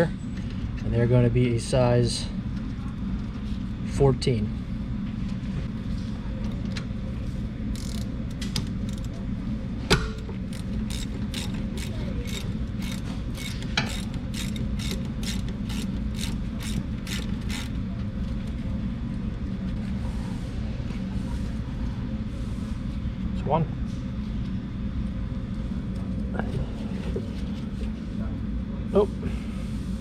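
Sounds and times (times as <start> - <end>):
ratchet clicking: 7.7 - 8.1, 10.4 - 17.8.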